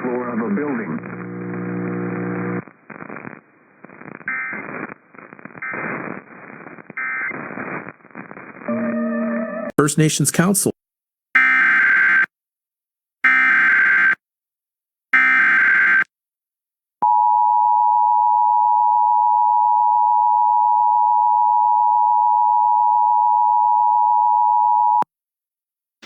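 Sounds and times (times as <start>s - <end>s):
two-tone attention signal: 8.7s - 9.7s.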